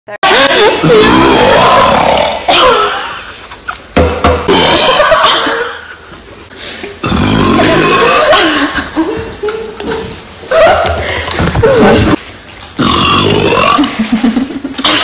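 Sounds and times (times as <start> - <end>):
person burping loudly: 0.8 - 3.0, 4.5 - 5.4, 7.0 - 8.4, 12.8 - 14.0.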